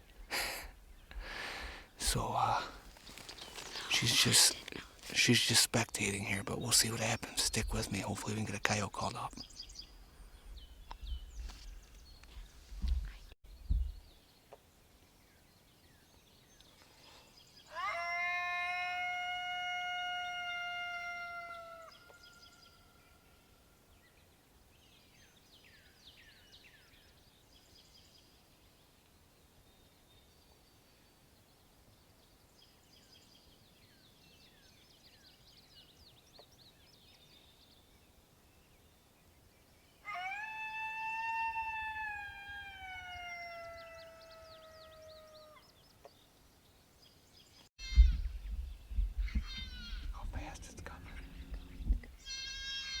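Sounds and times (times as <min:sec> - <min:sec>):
coyote howl: 0:17.7 - 0:23.1, 0:40.0 - 0:45.6.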